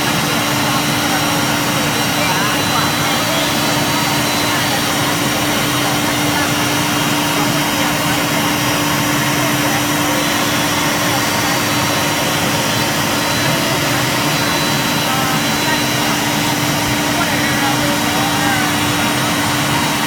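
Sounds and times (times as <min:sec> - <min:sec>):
wood router spindle whine: 0:00.0 - 0:20.0.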